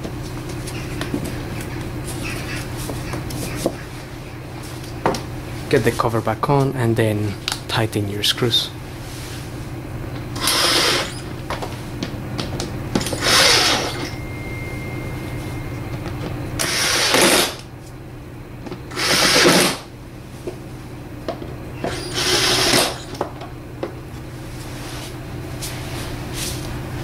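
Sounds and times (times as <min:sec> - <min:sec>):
power screwdriver whirring: 0:10.4 - 0:11.3, 0:13.2 - 0:14.0, 0:16.6 - 0:17.6, 0:18.9 - 0:19.8, 0:21.9 - 0:23.1.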